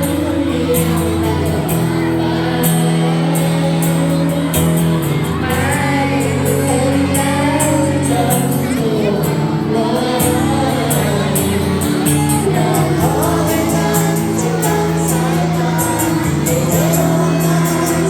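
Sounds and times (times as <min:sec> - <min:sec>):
backing music with steady beat: 0:00.0 - 0:18.0
person singing: 0:00.0 - 0:18.0.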